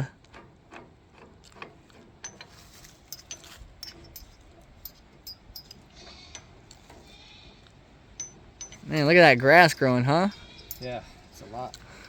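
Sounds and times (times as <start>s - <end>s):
light metallic clinks and taps: 2.2s - 7.0s, 8.1s - 12.0s.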